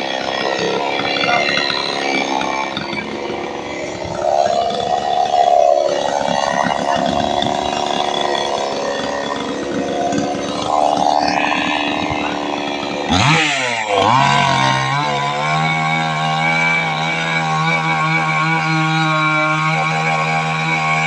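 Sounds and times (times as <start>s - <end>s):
chainsaw running: 0.0s - 21.0s.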